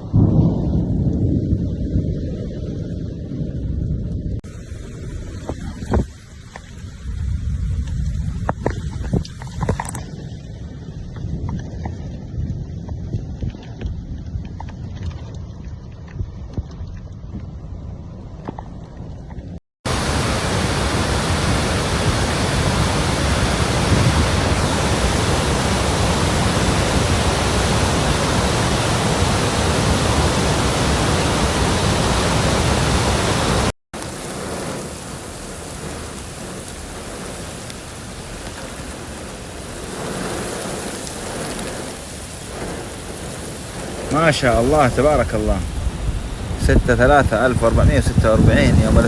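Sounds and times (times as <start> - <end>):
rainstorm rushing: 0.0 - 14.0, 19.8 - 49.0.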